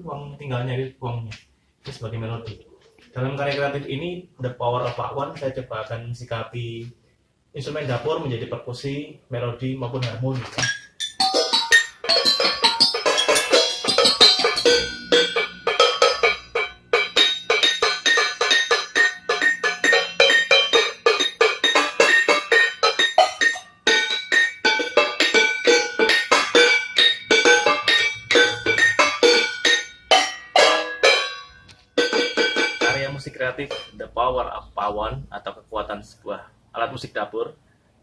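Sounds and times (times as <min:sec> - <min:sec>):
kitchen utensils played as percussion: 0:10.4 - 0:34.0
pots and pans struck rhythmically: 0:10.6 - 0:34.0
low held tone: 0:10.7 - 0:34.1.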